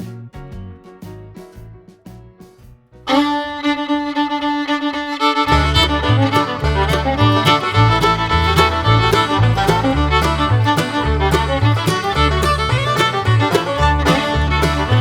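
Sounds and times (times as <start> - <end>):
background music with held notes: 0.0 - 15.0
pulsing bass line: 5.4 - 15.0.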